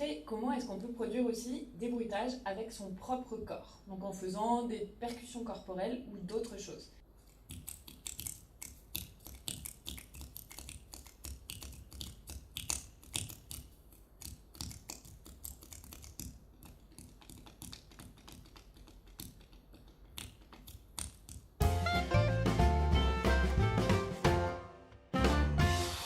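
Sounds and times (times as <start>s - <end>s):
taps and clicks on the body: 7.3s - 21.6s.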